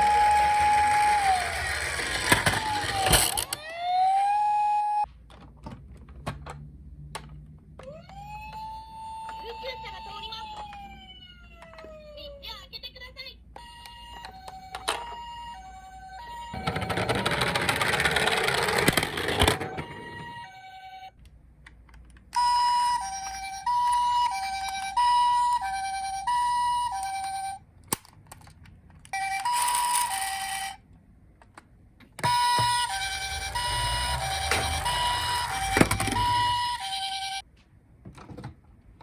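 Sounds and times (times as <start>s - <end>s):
toy ambulance two-tone siren: 0.0s - 5.1s, 7.8s - 12.6s, 13.6s - 21.2s, 22.3s - 27.6s, 29.1s - 30.8s, 32.2s - 37.4s.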